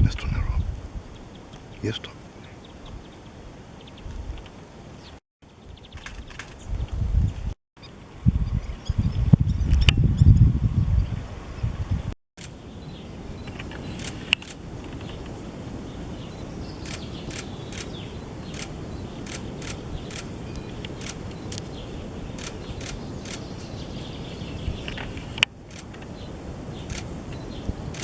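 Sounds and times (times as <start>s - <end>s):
sharp high ticks: 13.7s - 14.6s, 16.8s - 23.6s, 25.6s - 26.0s, 26.8s - 27.2s
loud click: 26.9s - 27.1s.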